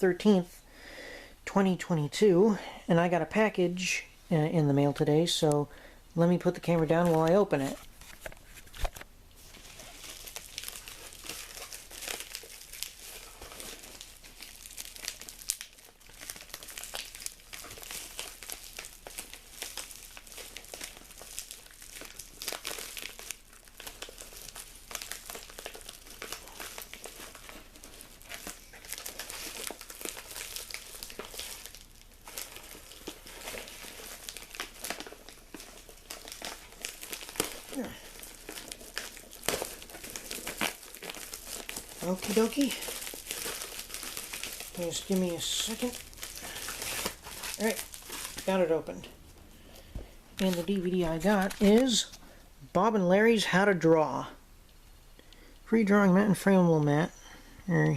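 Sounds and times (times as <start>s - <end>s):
packaging crinkling and tearing: 6.4s - 52.4s.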